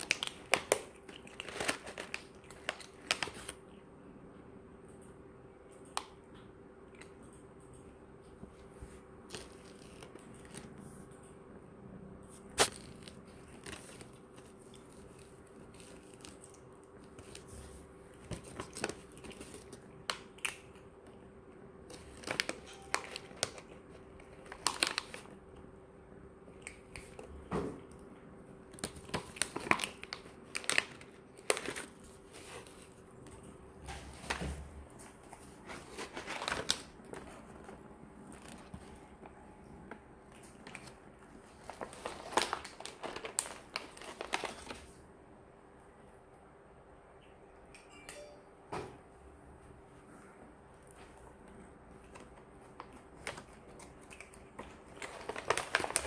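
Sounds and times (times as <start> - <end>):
cats crunching dry food: 0.0 - 3.8, 9.2 - 25.8, 26.4 - 45.0, 51.0 - 56.0
faint steady hum: 0.0 - 56.0.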